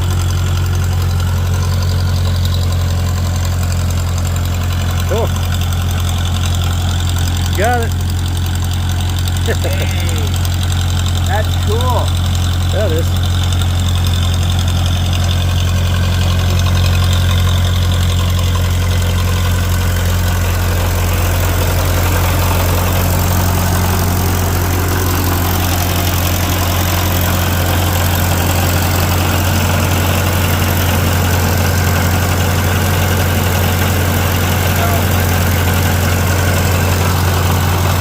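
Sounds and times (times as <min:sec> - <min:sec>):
tractor engine idling: 0:00.0 - 0:38.0.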